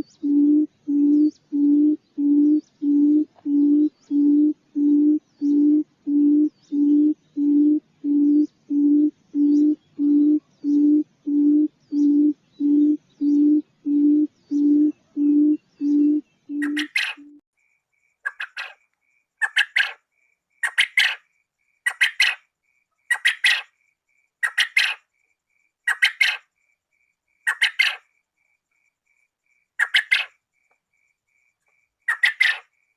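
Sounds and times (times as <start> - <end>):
harsh sharp quail calls: 0.0 - 17.4, 18.1 - 23.8, 24.4 - 25.1, 25.8 - 26.5, 27.4 - 28.1, 29.8 - 30.4, 32.0 - 32.7
low hooting lure call: 0.0 - 17.4.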